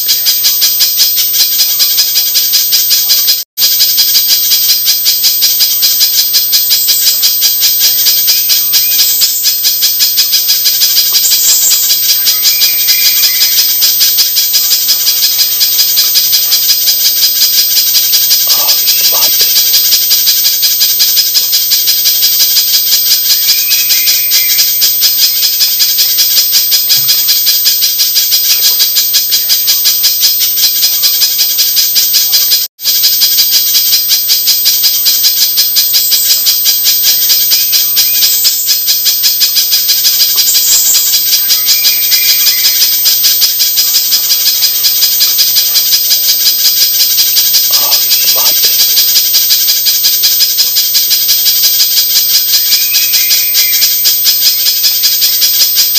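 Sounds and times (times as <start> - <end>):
rapid rattling bird calls: 1.4 - 29.5, 34.9 - 55.9.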